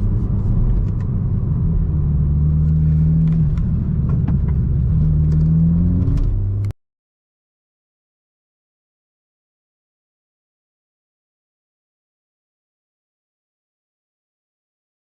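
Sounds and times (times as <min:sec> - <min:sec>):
car engine and road rumble: 0:00.0 - 0:06.8.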